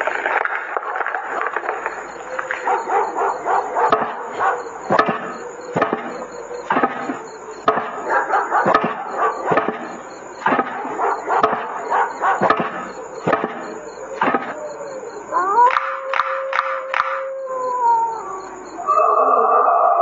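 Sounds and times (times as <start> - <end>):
dog barking: 0.8 - 17.2.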